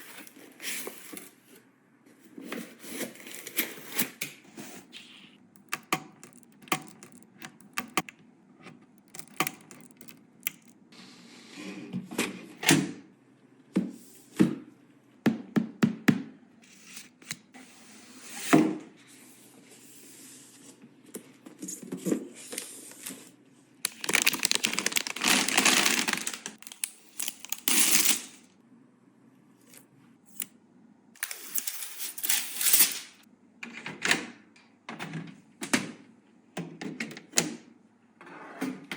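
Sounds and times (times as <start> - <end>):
rustling and scraping: 0.0 - 4.9
plastic and metal parts clicking: 5.6 - 8.1, 9.0 - 10.8.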